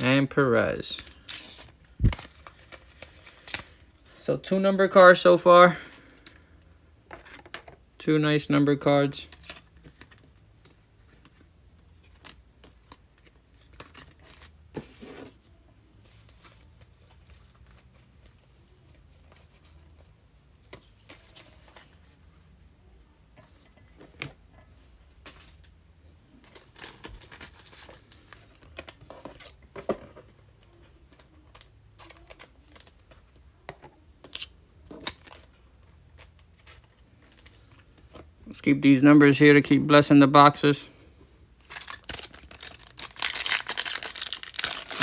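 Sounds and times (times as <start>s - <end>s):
foil wrappers crinkling: 41.6s - 45.0s.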